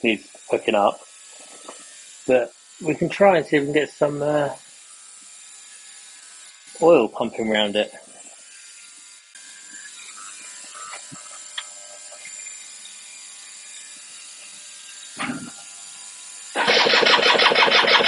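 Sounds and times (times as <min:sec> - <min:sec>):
pulsing mechanical whirr: 0:16.2 - 0:18.0.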